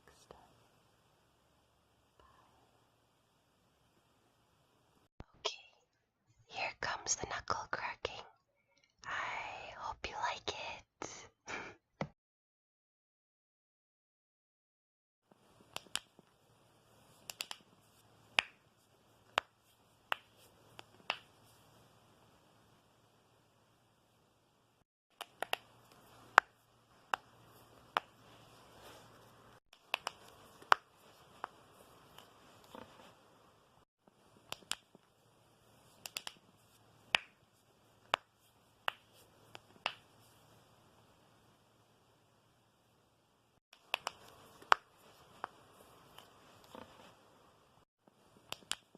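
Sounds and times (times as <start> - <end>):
knuckles cracking: 17.2 - 17.7, 29.8 - 30.8, 36.0 - 36.4.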